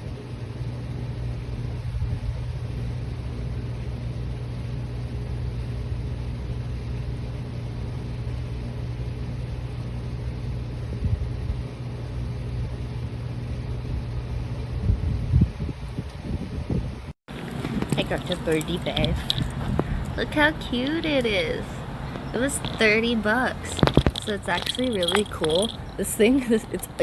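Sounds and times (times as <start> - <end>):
low mechanical hum: 0.0 - 27.0.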